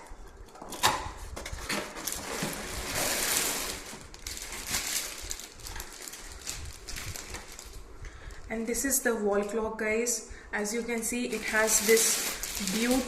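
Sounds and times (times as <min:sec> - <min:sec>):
packaging rustling and crackling: 0:00.5 - 0:08.5, 0:10.8 - 0:13.0.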